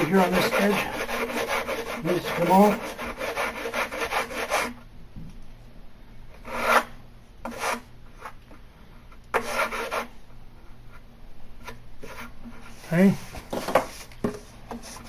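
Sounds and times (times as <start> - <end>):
sandpaper scratching wood edge: 0.0 - 4.8, 9.4 - 10.1.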